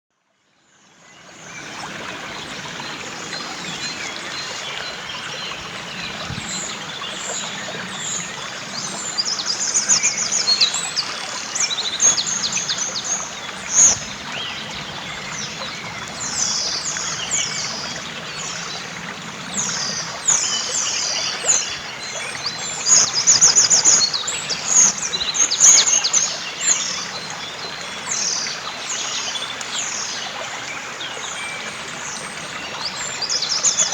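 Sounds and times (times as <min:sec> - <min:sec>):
river rushing: 0:01.3 - 0:17.8.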